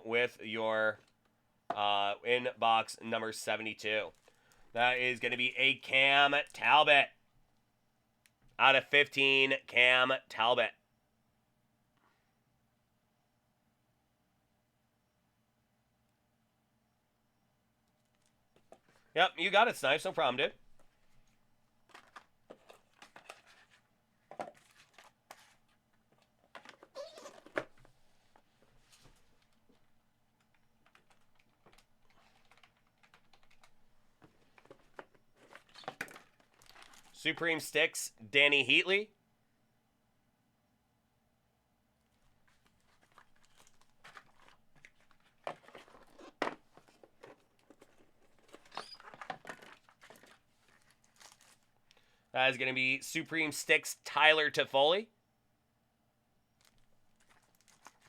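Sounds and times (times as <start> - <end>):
cards and packaging crinkling: 4.0 - 5.2, 19.8 - 27.9, 28.7 - 37.6, 42.2 - 52.0, 56.6 - 58.0
card packaging tearing and crinkling: 24.5 - 25.7, 35.4 - 37.2, 42.6 - 46.4, 47.3 - 51.7, 56.6 - 58.0.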